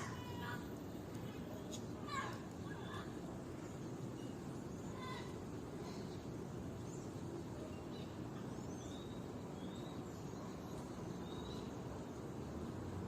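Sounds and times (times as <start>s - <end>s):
bird chirps: 5.9s - 12.2s.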